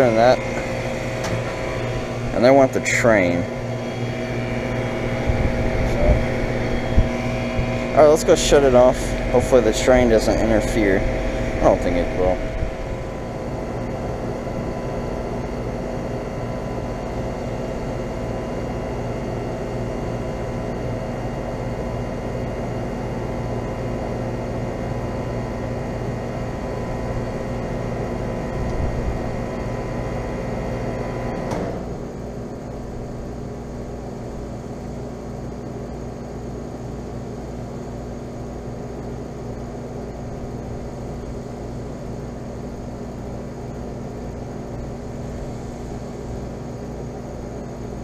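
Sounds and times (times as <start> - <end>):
air conditioner shutoff click: 0.0 - 17.9, 28.5 - 30.4, 31.0 - 32.6
air conditioner compressor hum: 0.0 - 48.0
fan rush: 0.0 - 48.0.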